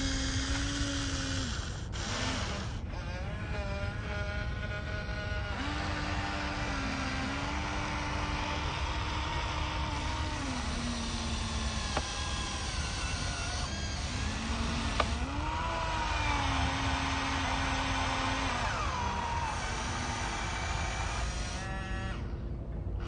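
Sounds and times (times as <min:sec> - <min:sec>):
small electric motors whirring: 0:00.0 - 0:22.5
sharp clicks: 0:11.3 - 0:15.3.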